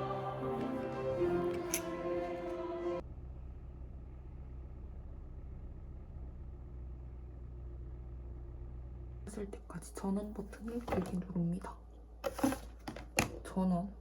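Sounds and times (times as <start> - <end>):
background music: 0.0 - 3.0.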